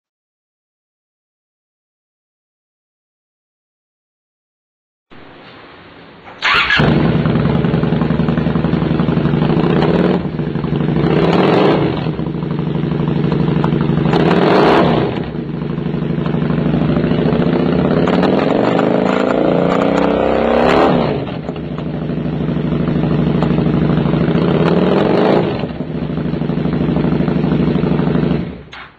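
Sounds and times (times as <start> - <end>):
motorcycle engine idling and revving: 6.4 - 28.9.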